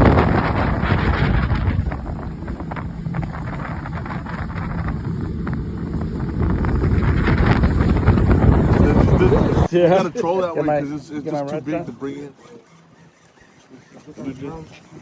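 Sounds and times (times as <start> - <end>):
wind buffeting microphone: 0.0 - 9.7.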